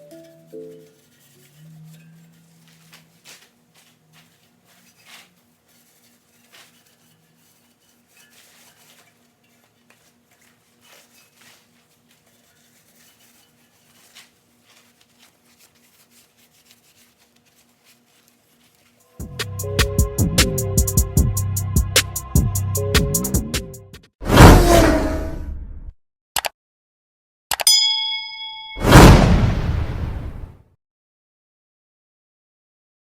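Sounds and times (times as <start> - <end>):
metal tools clinking and scraping: 4.2 - 14.4.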